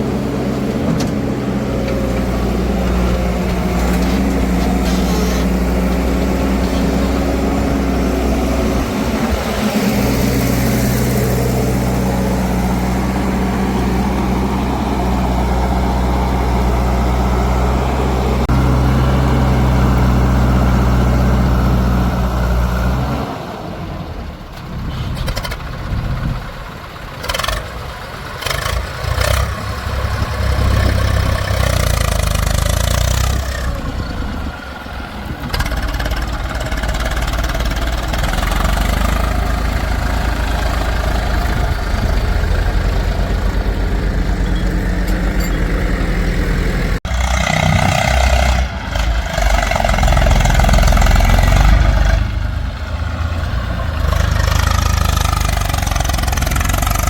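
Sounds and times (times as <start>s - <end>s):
diesel engine running: 0.0s - 57.0s
engine rising and falling: 35.4s - 57.0s.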